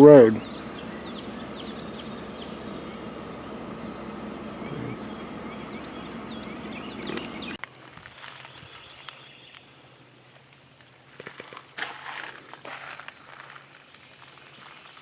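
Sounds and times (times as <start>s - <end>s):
low steady hum: 0.0s - 15.0s
bird chirps: 0.4s - 7.6s, 8.2s - 9.8s
loud rustling noise: 11.0s - 15.0s.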